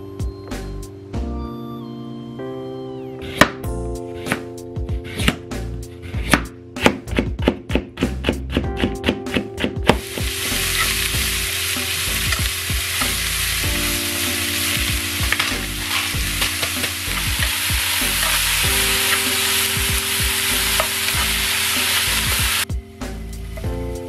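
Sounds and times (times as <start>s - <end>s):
food sizzling in a pan: 10.0s - 23.7s.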